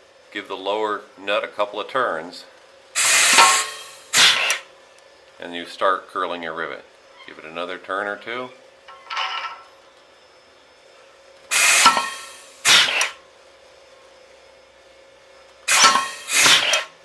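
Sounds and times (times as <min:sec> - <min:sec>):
rivet squeezer hissing bursts: 0:03.0 - 0:04.7, 0:11.5 - 0:13.2, 0:15.7 - 0:17.0.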